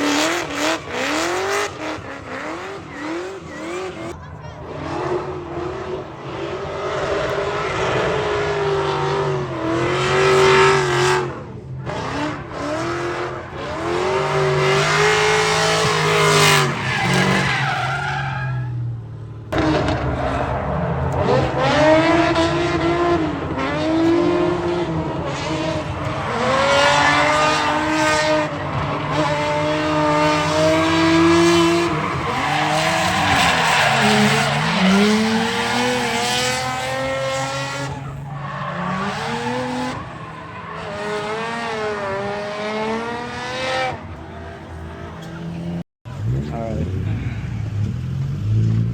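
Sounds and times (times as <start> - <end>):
car engine revving: 0.0 - 48.9
tyres squealing: 25.0 - 41.4.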